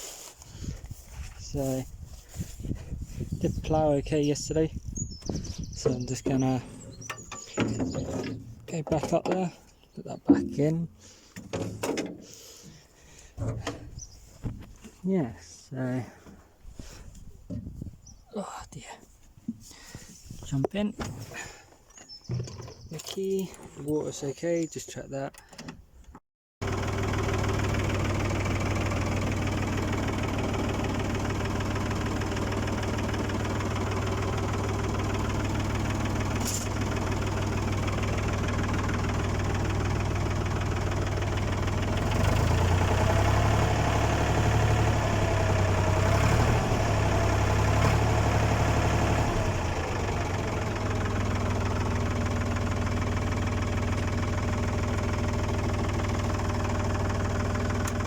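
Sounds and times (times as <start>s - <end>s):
tractor engine droning: 0.0s - 14.6s, 26.6s - 58.0s.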